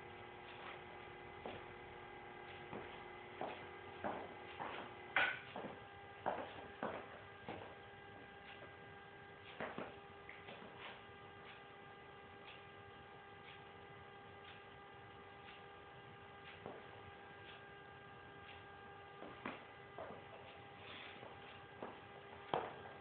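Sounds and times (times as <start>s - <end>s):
faint electrical hum: 0.0s - 23.0s.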